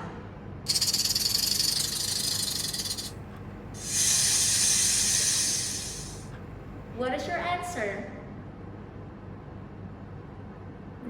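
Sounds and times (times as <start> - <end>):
snake hissing: 0.7 - 3.1, 3.8 - 6.3
rattlesnake tail rattle: 0.7 - 3.2, 3.8 - 6.3.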